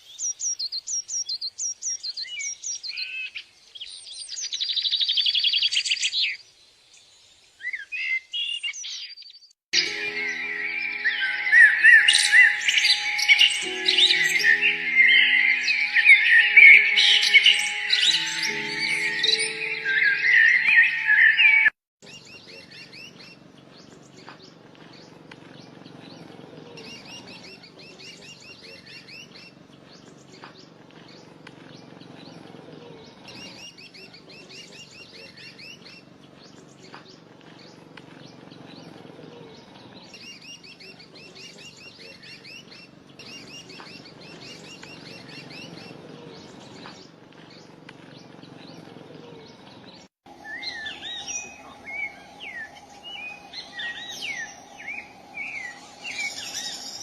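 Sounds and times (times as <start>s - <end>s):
birds chirping and trilling: 0.0s - 57.0s
loud music: 9.8s - 21.7s.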